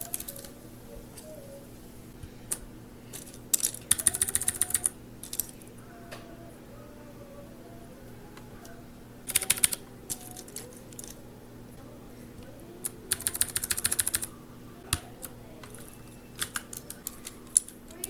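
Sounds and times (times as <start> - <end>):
mechanical keyboard typing: 0.0 - 0.6, 2.5 - 5.6, 9.2 - 11.2, 12.8 - 14.3, 14.9 - 18.0.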